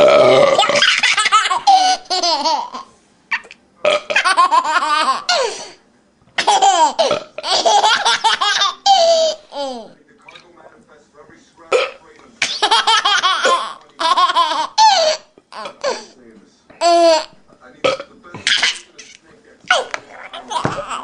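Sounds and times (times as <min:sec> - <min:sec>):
baby laughing: 0:00.6 - 0:03.6, 0:04.2 - 0:05.6, 0:06.4 - 0:10.0, 0:12.5 - 0:16.0, 0:19.7 - 0:21.0.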